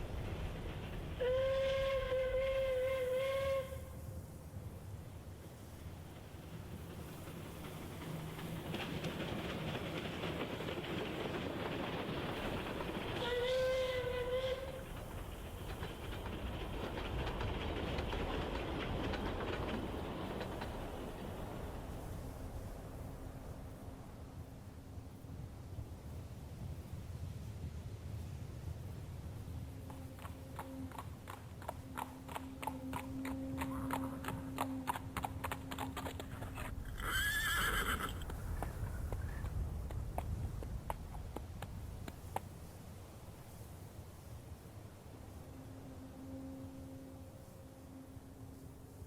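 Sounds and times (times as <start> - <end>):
train wheels clattering: 0.0 - 3.5, 5.6 - 23.8, 29.5 - 44.7
train whistle: 1.2 - 4.3, 13.2 - 14.9, 29.8 - 35.5, 45.4 - 48.7
horse hooves clip-clopping: 29.8 - 42.7
horse whinnying: 36.8 - 38.4.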